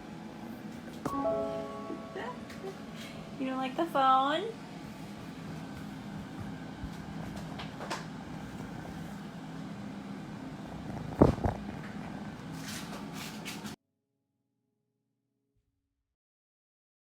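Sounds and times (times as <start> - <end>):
kitten purring: 10.6 - 12.1.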